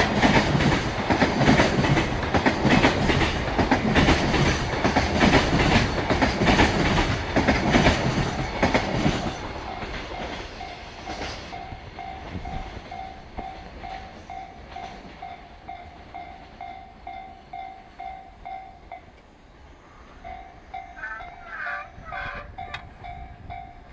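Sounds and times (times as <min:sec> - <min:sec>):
train wagons clattering over rail joints: 0:00.0 - 0:16.6
level crossing warning bell: 0:09.5 - 0:19.2, 0:20.2 - 0:23.9.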